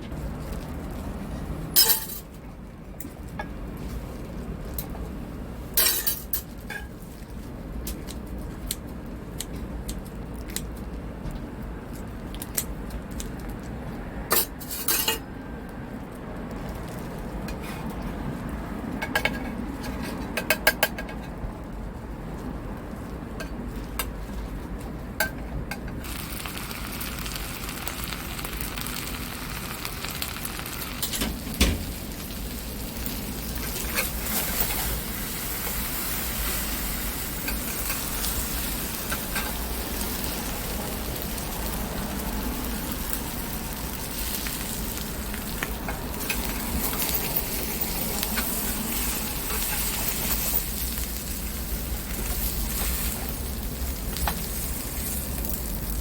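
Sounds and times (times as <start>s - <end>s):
utensils and dishes clinking: 1.7s - 2.4s, 5.8s - 6.9s, 14.3s - 15.3s
sizzling hiss: 26.0s - 56.0s.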